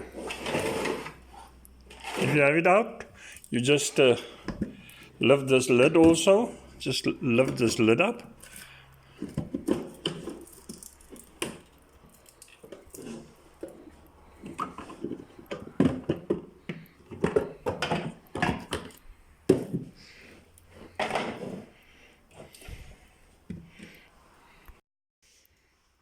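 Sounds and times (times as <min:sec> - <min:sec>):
plastic parts knocking and clattering: 0:07.4 - 0:20.0, 0:20.8 - 0:21.8.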